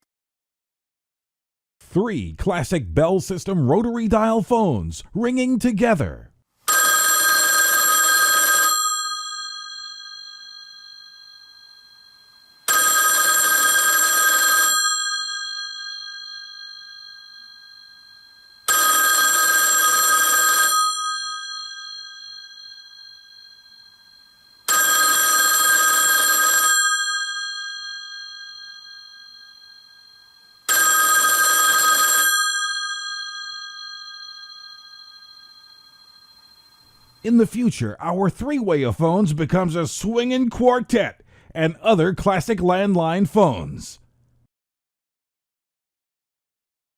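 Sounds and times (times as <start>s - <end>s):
telephone bells ringing: 6.7s - 37.4s.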